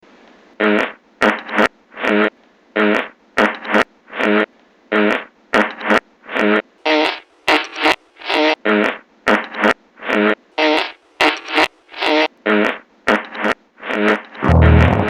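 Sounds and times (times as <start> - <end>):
buzzing farts: 6.9 - 9.4, 10.2 - 13.2, 14.0 - 15.0.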